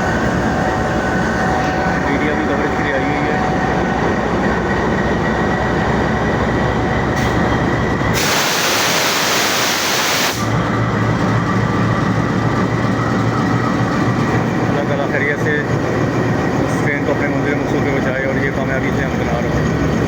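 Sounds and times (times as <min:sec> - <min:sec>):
passenger train running: 0:00.0 - 0:20.0
loud hiss: 0:08.2 - 0:10.6.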